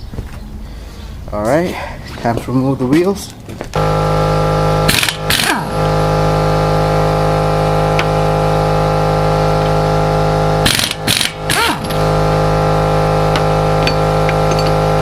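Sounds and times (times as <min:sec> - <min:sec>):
steady mechanical hum: 0:00.0 - 0:15.0
impact wrench bursts: 0:03.8 - 0:15.0.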